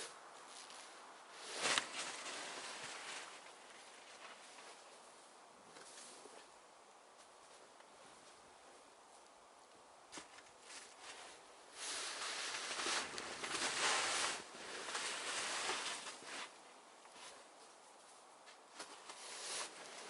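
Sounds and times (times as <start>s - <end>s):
snow scraping and crunching: 0.0s - 4.9s, 10.6s - 16.6s, 18.8s - 20.0s.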